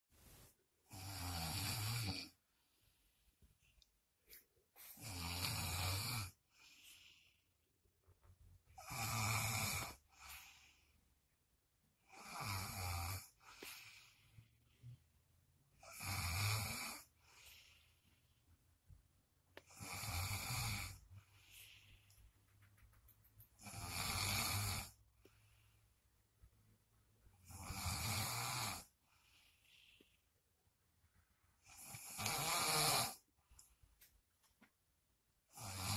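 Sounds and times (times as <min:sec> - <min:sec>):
person snoring: 0:00.9 - 0:02.4, 0:04.8 - 0:06.4, 0:08.8 - 0:10.7, 0:12.0 - 0:14.0, 0:15.8 - 0:17.9, 0:19.6 - 0:21.8, 0:23.6 - 0:25.0, 0:27.4 - 0:29.0, 0:31.6 - 0:33.3, 0:35.5 - 0:35.9
soft breath: 0:02.4 - 0:05.2, 0:06.4 - 0:07.7, 0:10.0 - 0:11.2, 0:13.3 - 0:15.2, 0:17.1 - 0:18.7, 0:20.9 - 0:22.6, 0:25.1 - 0:26.2, 0:28.9 - 0:31.6.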